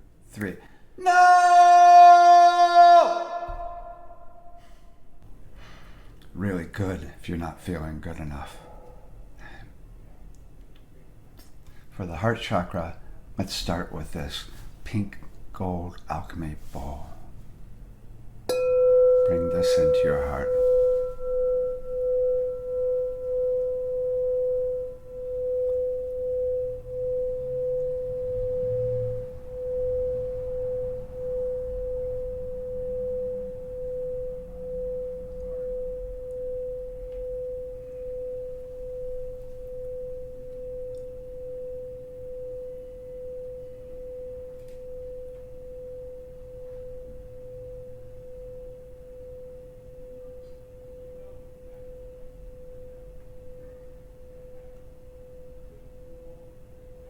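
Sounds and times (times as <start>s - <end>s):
singing bowl ringing: 18.5s - 57.0s.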